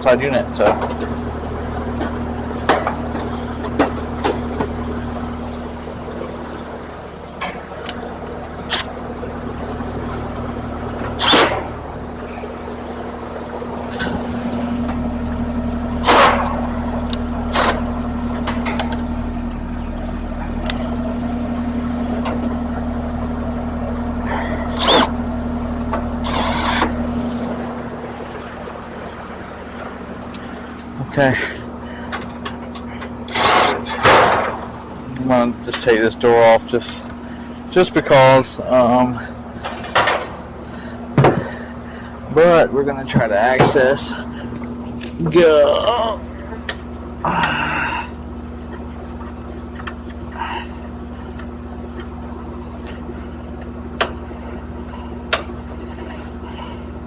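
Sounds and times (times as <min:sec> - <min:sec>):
air-conditioner unit humming: 0:00.0 - 0:57.0
metallic clanks and knocks: 0:01.9 - 0:04.9, 0:39.6 - 0:40.5.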